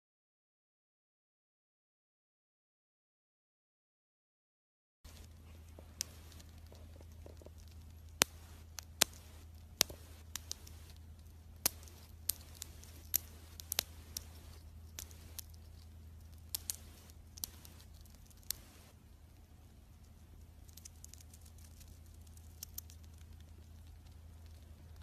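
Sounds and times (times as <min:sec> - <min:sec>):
low steady hum: 0:05.1 - 0:25.0.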